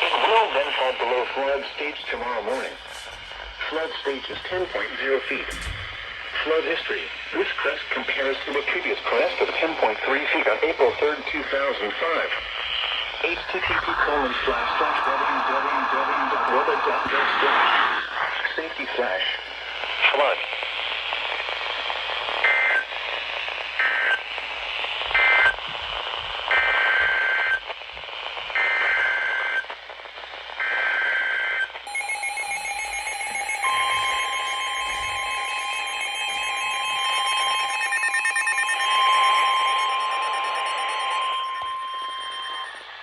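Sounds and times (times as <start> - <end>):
pulsing electronic alarm: 31.9 - 43.0
screeching digital data bursts: 31.9 - 43.0
steady high attention tone: 31.9 - 43.0.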